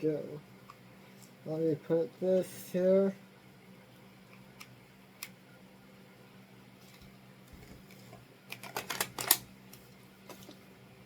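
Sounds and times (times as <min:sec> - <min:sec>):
toy parts clicking and rattling: 0:08.5 - 0:09.4.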